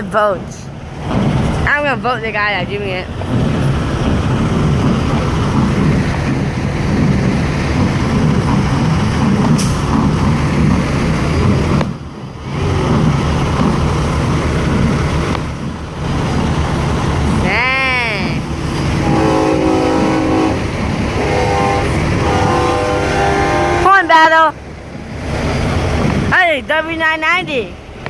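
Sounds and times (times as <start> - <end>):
truck engine brake rattle: 0.7 - 17.4.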